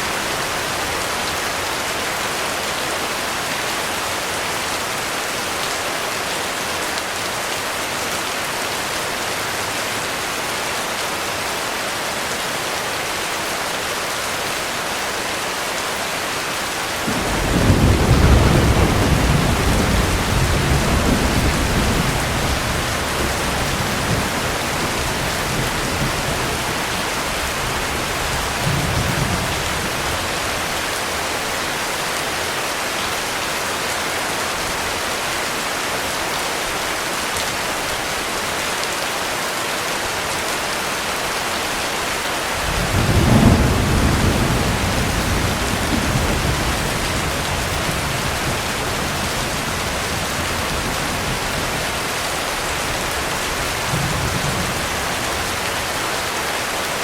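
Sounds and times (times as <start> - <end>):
heavy rain: 0.0 - 57.0
thunder rumbling: 17.1 - 30.8, 42.6 - 55.9.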